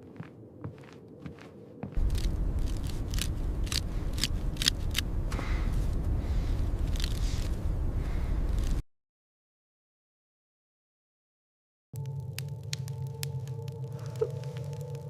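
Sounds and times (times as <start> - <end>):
footsteps crunching in snow: 0.0 - 8.8
low blizzard wind rumble: 0.0 - 8.8, 12.0 - 15.0.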